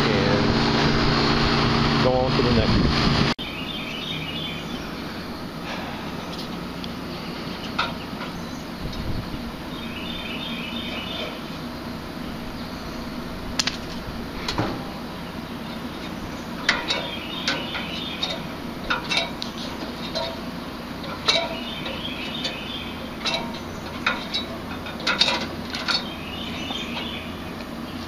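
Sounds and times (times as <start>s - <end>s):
condensing unit humming: 0.0s - 28.0s
metal tools clinking: 16.0s - 20.4s, 21.0s - 27.1s.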